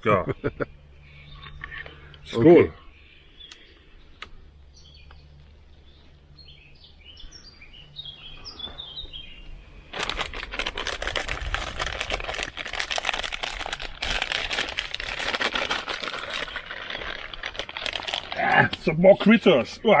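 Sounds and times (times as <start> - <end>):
bird chirps: 0.0 - 9.9
plastic bag crinkling: 9.9 - 19.0.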